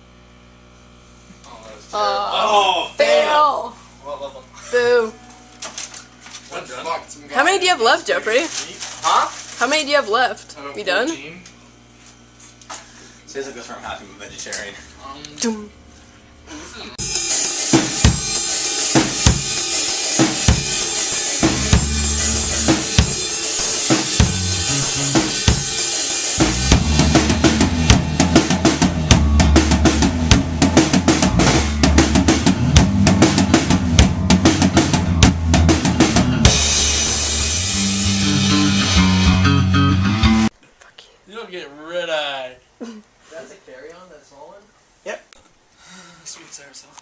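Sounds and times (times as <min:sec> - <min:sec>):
cymbals: 0:17.0 - 0:39.4
drum kit beat: 0:17.0 - 0:40.5
bass guitar notes: 0:21.4 - 0:40.5.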